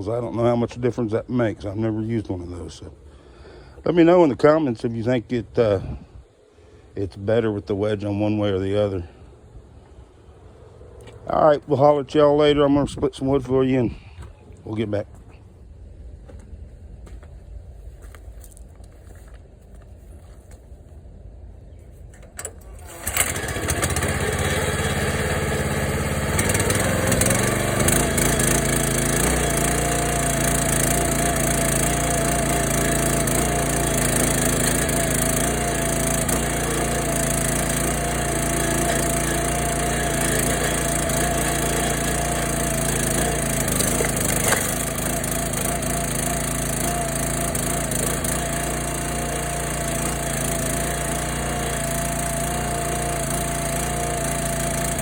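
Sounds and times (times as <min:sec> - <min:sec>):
log splitter engine running: 0:22.1 - 0:55.0
wood splitting crack: 0:43.2 - 0:45.3.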